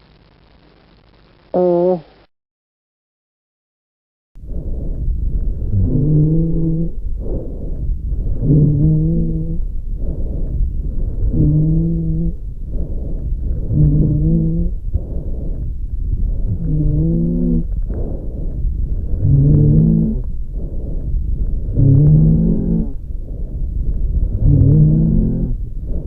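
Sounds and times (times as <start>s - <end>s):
animal breathing with wheeze: 4.4s - 26.0s
low rumble: 4.4s - 26.0s.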